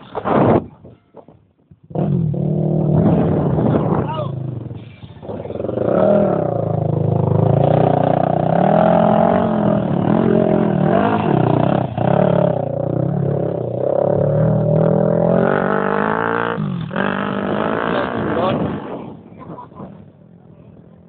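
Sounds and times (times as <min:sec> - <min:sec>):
off-road vehicle engine revving: 0:01.9 - 0:19.5.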